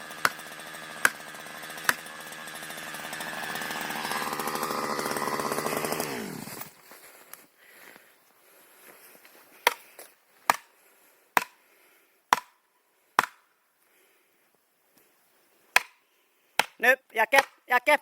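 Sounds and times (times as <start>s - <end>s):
chopping blows on wood: 10.5s - 10.7s, 11.4s - 11.6s, 12.3s - 12.6s, 13.2s - 13.4s, 15.8s - 16.0s.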